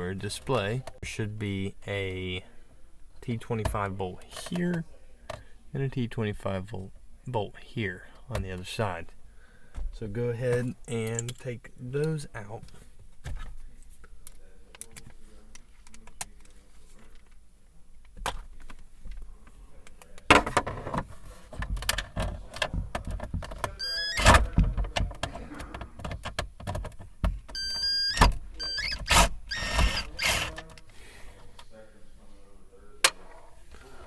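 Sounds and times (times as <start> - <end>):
bolts squeaking: 22.4 - 25.0, 27.5 - 30.7.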